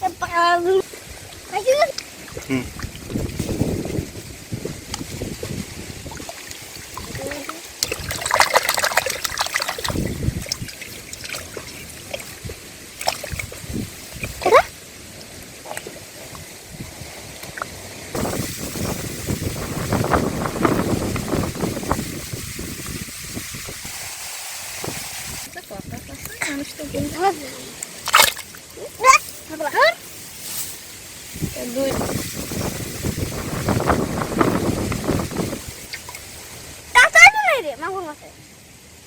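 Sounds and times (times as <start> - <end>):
hands splashing in muddy water: 6.2 - 14.4, 27.9 - 28.5.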